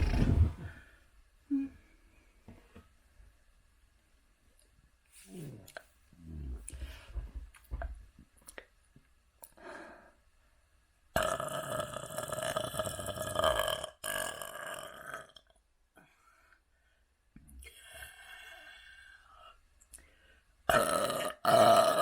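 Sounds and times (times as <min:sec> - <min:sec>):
person burping: 0:11.2 - 0:15.5, 0:20.7 - 0:22.0.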